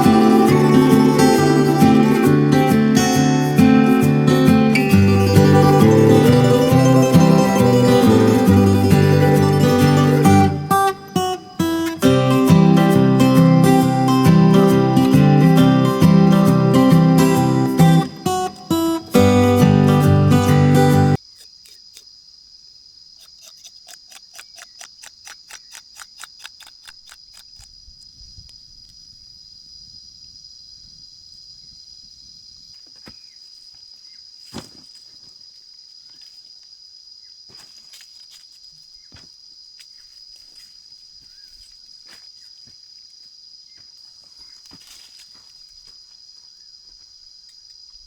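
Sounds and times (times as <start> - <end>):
insects chirring: 0.0 - 48.0.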